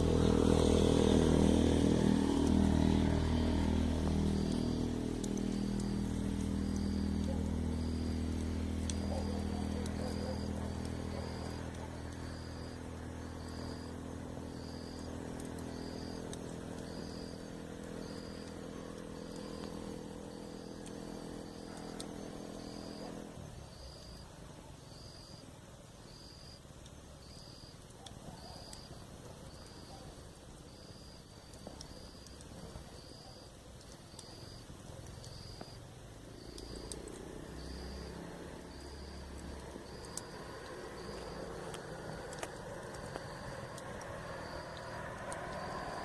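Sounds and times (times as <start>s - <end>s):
vehicle engine humming: 0.0s - 23.5s, 34.2s - 46.0s
campfire crackling: 0.0s - 46.0s
insect chirping: 0.0s - 46.0s.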